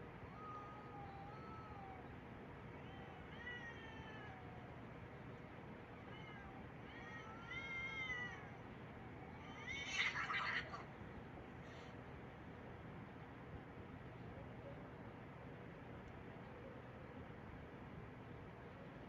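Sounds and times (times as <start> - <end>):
cat meowing: 0.3 - 2.1, 2.8 - 4.7, 6.0 - 8.6, 9.3 - 10.8.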